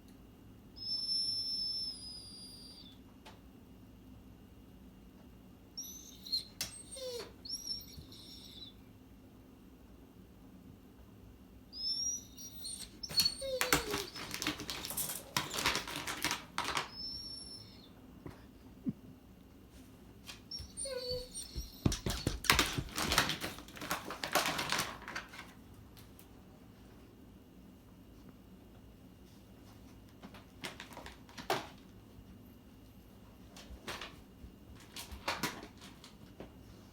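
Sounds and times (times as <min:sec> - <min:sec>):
rapid clicking and rustling: 0:13.1 - 0:16.9, 0:21.8 - 0:25.6.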